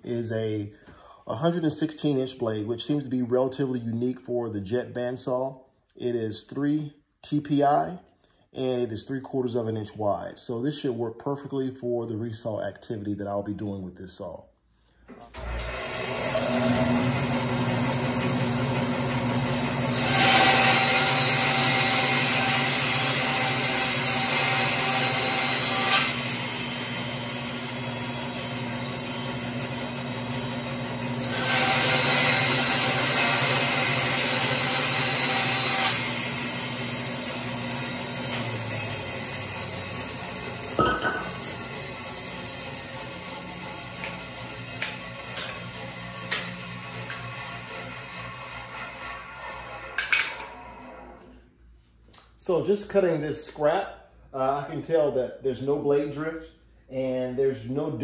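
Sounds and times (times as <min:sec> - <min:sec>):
bandsaw cutting wood: 0:15.4 - 0:51.2
knock: 0:40.8 - 0:41.4.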